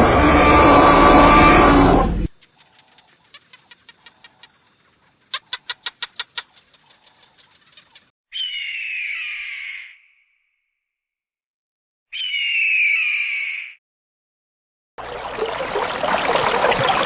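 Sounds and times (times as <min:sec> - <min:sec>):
animal chirping: 0:02.4 - 0:10.0, 0:12.2 - 0:13.8.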